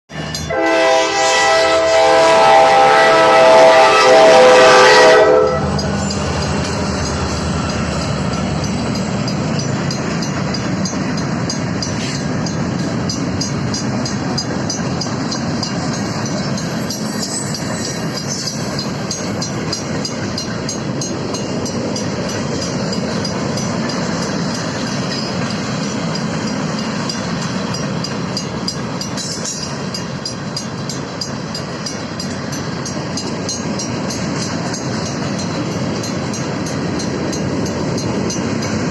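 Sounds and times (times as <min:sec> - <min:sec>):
crossing bells ringing: 0:00.1 - 0:01.3, 0:04.1 - 0:38.9
train wheels rumbling on rails: 0:00.1 - 0:38.9
locomotive air horn: 0:00.5 - 0:06.1.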